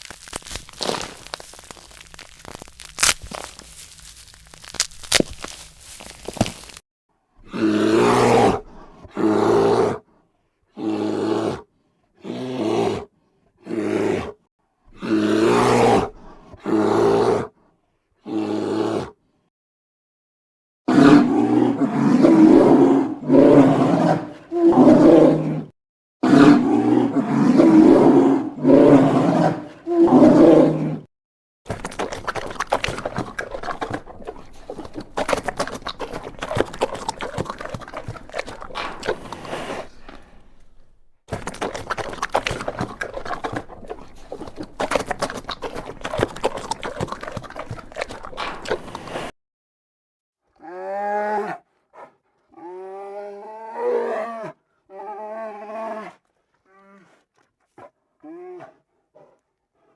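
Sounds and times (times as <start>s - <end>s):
crackling noise: 0.0s - 6.8s, 31.7s - 49.2s
bear roaring and growling: 7.4s - 10.0s, 10.8s - 14.4s, 15.0s - 17.5s, 20.9s - 31.1s, 31.7s - 49.3s.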